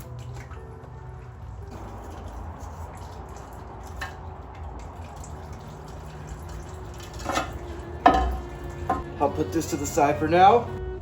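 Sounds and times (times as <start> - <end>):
oil dripping and trickling: 0.0 - 10.6.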